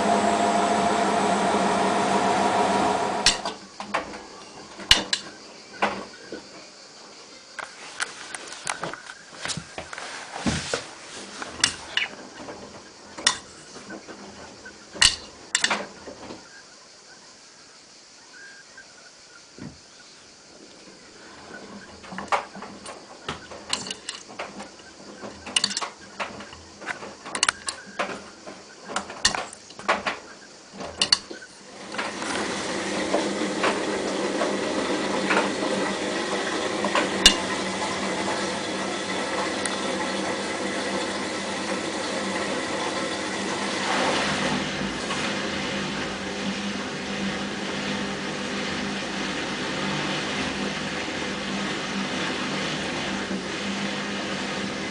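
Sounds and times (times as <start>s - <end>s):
washing machine running: 0.0s - 3.6s, 31.6s - 54.9s
clinks and knocks: 15.0s - 15.9s, 23.6s - 28.3s, 28.9s - 30.2s.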